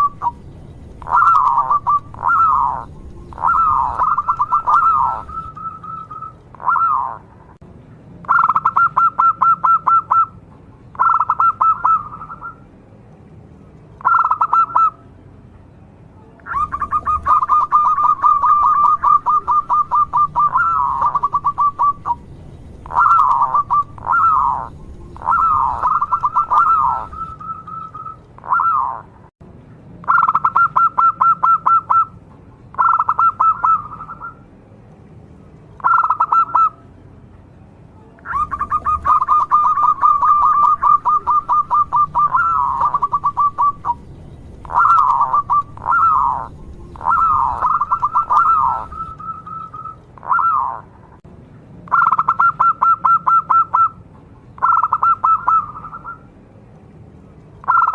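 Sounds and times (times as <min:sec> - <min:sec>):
dove cooing: 0:00.0 - 0:07.3, 0:08.3 - 0:10.4, 0:11.0 - 0:12.6, 0:14.0 - 0:15.0, 0:16.5 - 0:29.1, 0:30.1 - 0:32.1, 0:32.8 - 0:34.4, 0:35.8 - 0:36.8, 0:38.2 - 0:50.9, 0:54.6 - 0:56.2.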